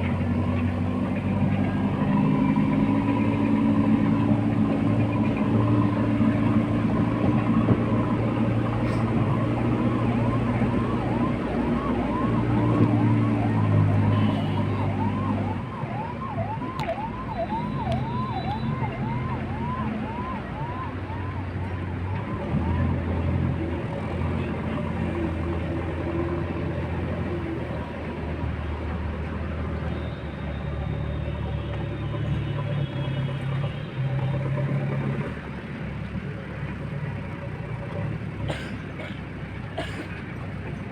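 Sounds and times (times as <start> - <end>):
diesel engine running: 0.0 - 29.7
warbling reversing alarm: 1.7 - 22.4.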